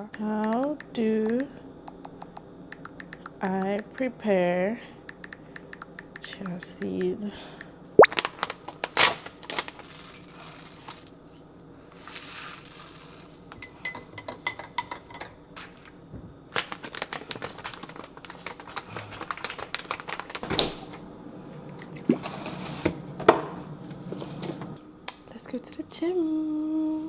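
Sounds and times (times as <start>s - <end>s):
rapid stirring taps: 0.0s - 8.1s, 16.7s - 20.4s
spoon clinking against cup: 13.6s - 15.4s.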